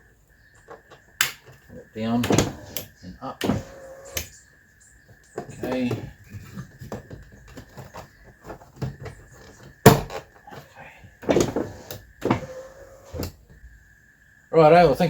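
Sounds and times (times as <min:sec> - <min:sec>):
car door knocks and clunks: 0:09.7 - 0:10.2.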